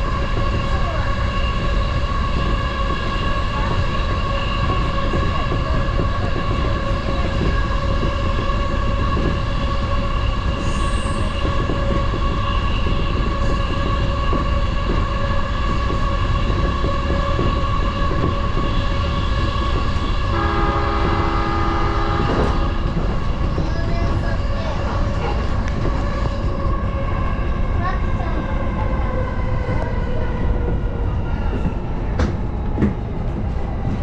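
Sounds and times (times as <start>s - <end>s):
train wheels rumbling and clicking: 0.0s - 34.0s
train whine: 0.0s - 34.0s
horn-like tone: 20.3s - 22.7s.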